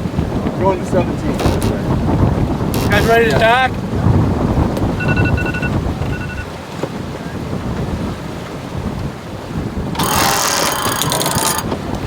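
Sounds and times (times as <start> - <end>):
water rushing past hull: 0.0 - 12.0
wind buffeting microphone: 0.0 - 12.0
short electronic beeps: 5.0 - 6.5.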